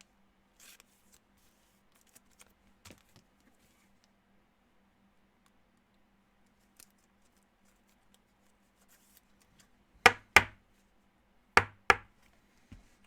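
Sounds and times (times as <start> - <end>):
sharp knocks: 10.1 - 10.6, 11.6 - 12.1.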